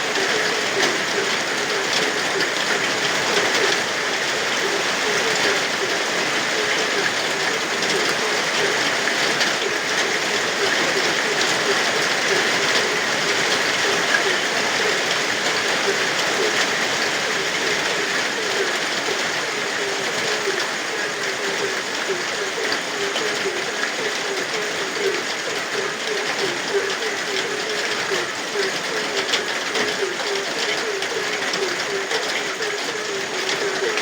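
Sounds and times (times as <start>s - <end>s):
frogs croaking: 0.0s - 34.0s
steady rain: 0.0s - 34.0s.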